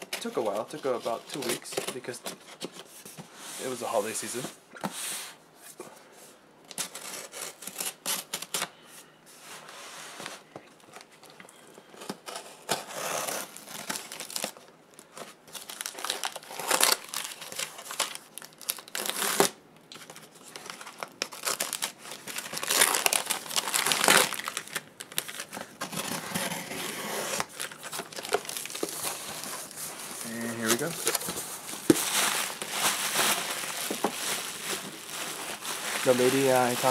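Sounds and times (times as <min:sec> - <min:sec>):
packaging crinkling and rustling: 0:00.0 - 0:04.4, 0:10.3 - 0:36.9.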